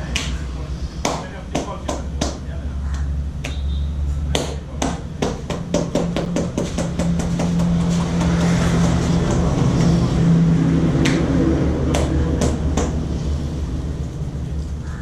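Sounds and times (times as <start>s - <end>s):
steady low hum: 0.0s - 15.0s
hands tapping and slapping head: 1.0s - 2.4s, 4.3s - 9.9s, 11.0s - 11.3s, 11.9s - 13.0s.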